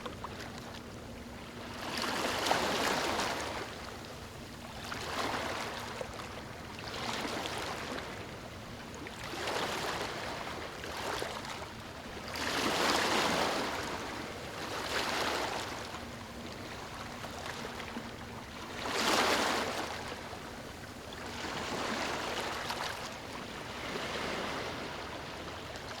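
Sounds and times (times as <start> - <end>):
ocean waves breaking: 1.4 - 4.0, 9.2 - 26.0.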